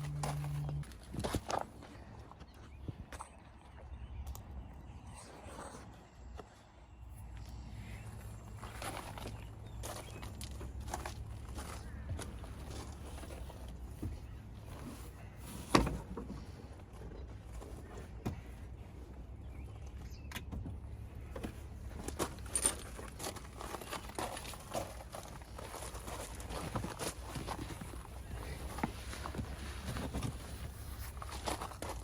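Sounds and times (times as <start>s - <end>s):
steady low hum: 0.0s - 1.0s
parts knocking and rattling: 20.4s - 32.0s.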